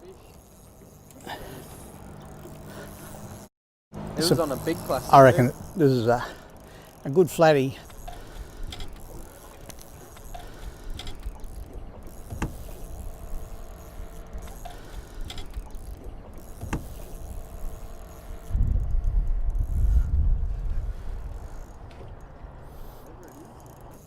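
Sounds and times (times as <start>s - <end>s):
low rumbling on a boat: 0.0s - 24.0s
sharp knocks: 16.6s - 17.2s.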